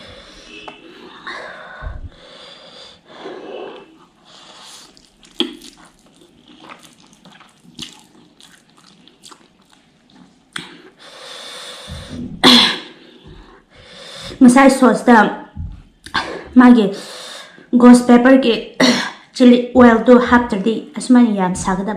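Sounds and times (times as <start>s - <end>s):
noisy breathing: 0.0s - 5.0s, 10.8s - 14.4s
person biting and chewing: 4.7s - 11.0s.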